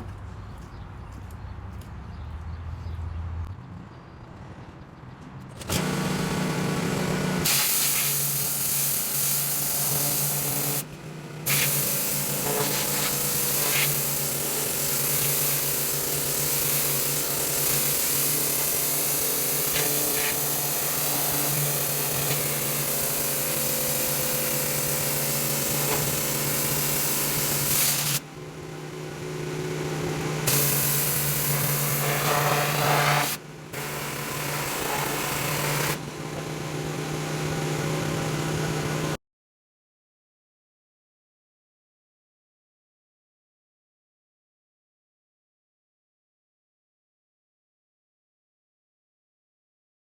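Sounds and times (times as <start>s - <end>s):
pressure washer spray hissing: 7.4s - 10.8s, 11.5s - 28.2s, 30.5s - 36.0s.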